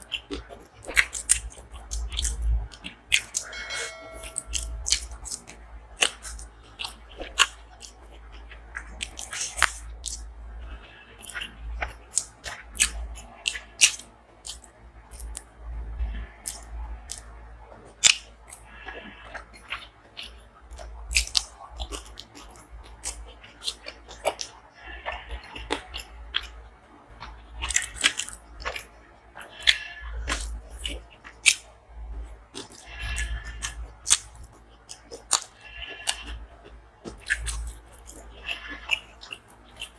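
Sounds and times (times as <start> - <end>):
person chewing crunchy food: 0.0 - 15.5, 16.4 - 17.2, 18.0 - 26.6, 27.2 - 31.8, 32.5 - 39.9
wet mouth clicks: 0.9 - 3.5, 9.0 - 10.2, 12.1 - 15.4.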